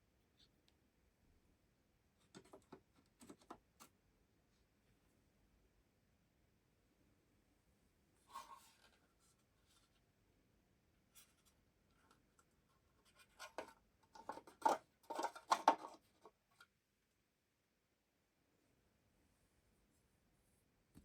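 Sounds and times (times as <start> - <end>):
scraping handling noises: 13.0 - 16.4.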